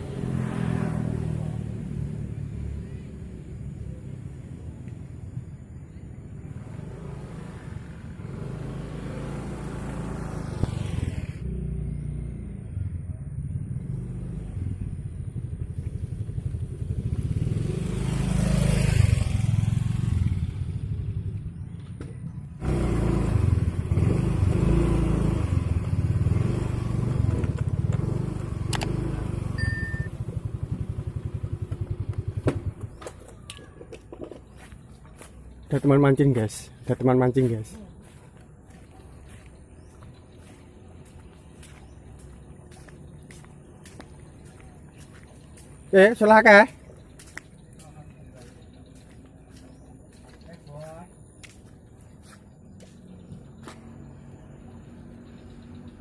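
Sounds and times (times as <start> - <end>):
small motorcycle engine running: 6.6 - 33.5.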